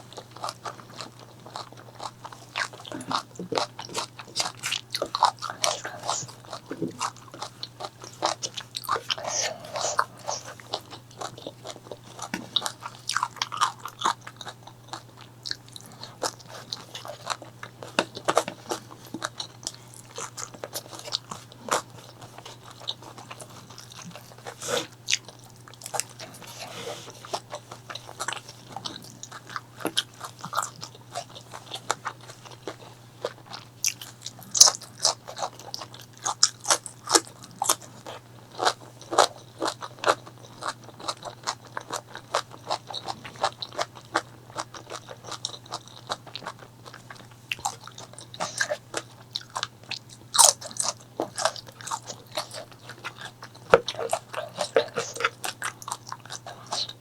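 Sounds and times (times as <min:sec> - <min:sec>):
steady low hum: 0:00.0 - 0:35.7
crunching and chewing crispy food: 0:00.0 - 0:57.0.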